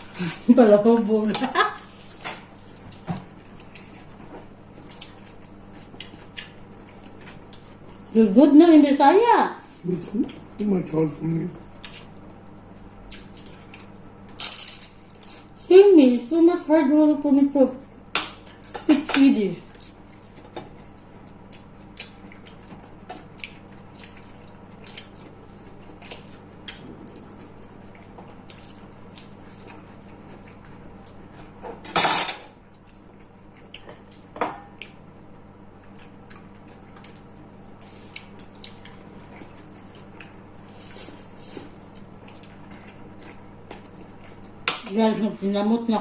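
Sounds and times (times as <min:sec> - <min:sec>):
low steady hum: 0:00.0 - 0:46.0
cutlery and dishes clinking: 0:31.8 - 0:32.5.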